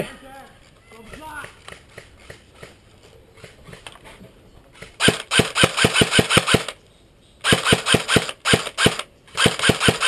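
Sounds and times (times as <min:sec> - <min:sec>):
airsoft gun firing bursts: 0:04.9 - 0:06.8, 0:07.4 - 0:10.0.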